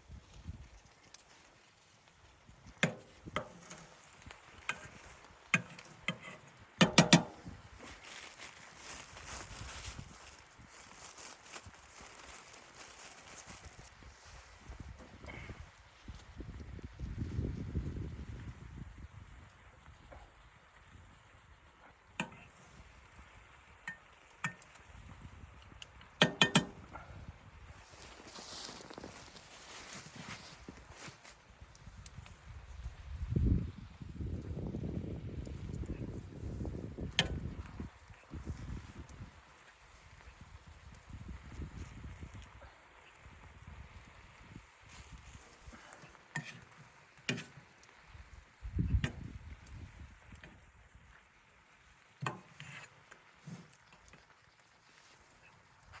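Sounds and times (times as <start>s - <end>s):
sharp knocks and clicks: 6.8s - 7.3s
soft rustle: 7.4s - 16.3s, 27.7s - 33.5s, 37.5s - 48.6s.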